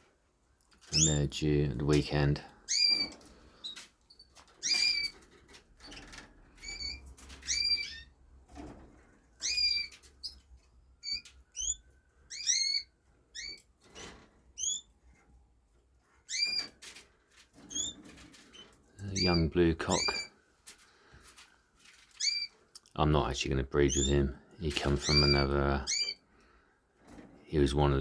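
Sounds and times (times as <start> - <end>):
canaries calling: 0.9 - 1.2, 2.6 - 8.2, 9.3 - 13.7, 14.5 - 15.0, 16.2 - 16.8, 17.6 - 20.4, 22.1 - 22.6, 23.8 - 26.3
knocks and flutters in cages: 2.7 - 22.7, 27.0 - 27.5.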